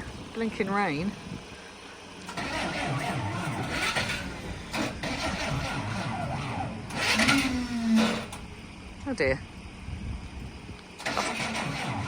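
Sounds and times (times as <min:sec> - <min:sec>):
starter motor cranking engine: 0:02.2 - 0:08.5, 0:11.0 - 0:12.0.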